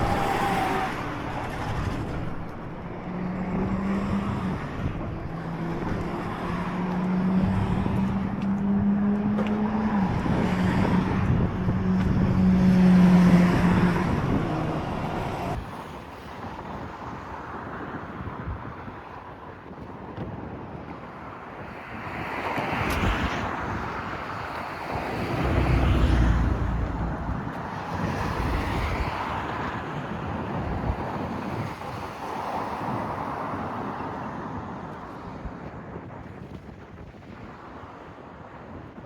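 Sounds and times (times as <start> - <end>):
vehicle engine drone: 0.0 - 15.6, 24.8 - 29.2.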